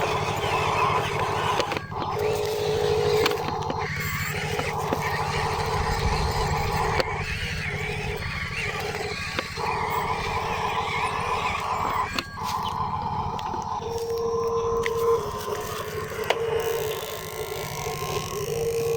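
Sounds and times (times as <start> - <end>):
motor whine: 0.0 - 18.9
low pulsing engine rumble: 4.0 - 12.0.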